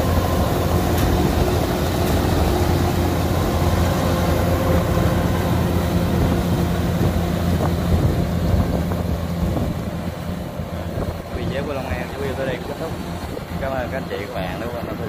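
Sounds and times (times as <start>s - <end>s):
threshing machinery rattle and hiss: 0.0s - 8.1s
diesel engine drone: 0.0s - 15.0s.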